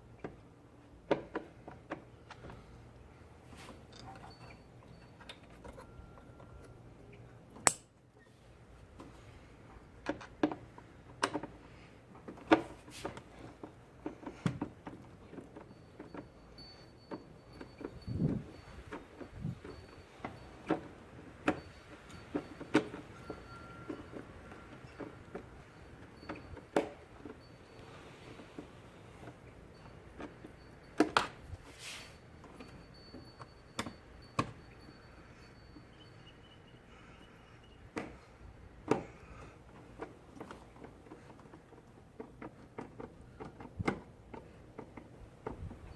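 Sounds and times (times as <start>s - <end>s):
tools clicking and knocking: 10.0s - 11.6s, 38.8s - 45.9s.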